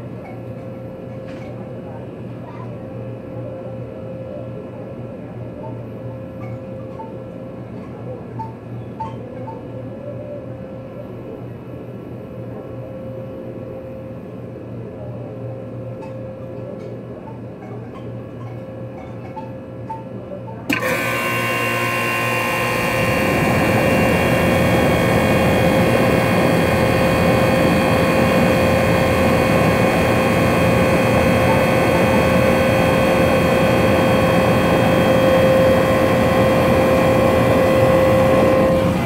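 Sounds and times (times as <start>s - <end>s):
compressor hum: 10.8s - 39.0s
fan rushing air: 20.7s - 39.0s.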